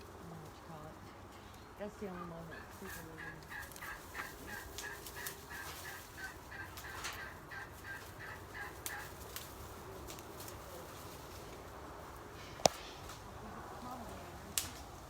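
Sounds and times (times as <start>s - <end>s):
faint clicks and snaps: 12.6s - 13.2s, 14.5s - 14.9s.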